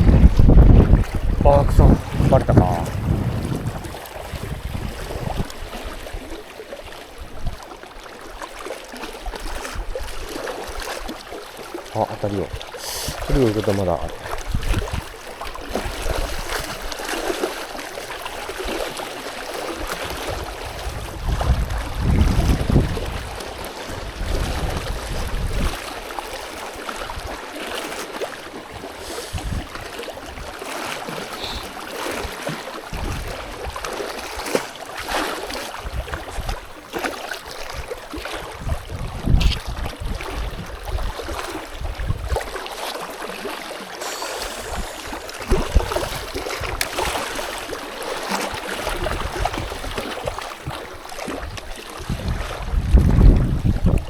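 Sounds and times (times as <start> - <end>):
low rumbles: 0.0 - 5.5
gusty wind buffeting microphone: 0.0 - 6.0, 20.0 - 25.8, 29.3 - 29.8, 32.9 - 33.8, 38.5 - 41.2, 41.8 - 42.4, 51.4 - 54.0.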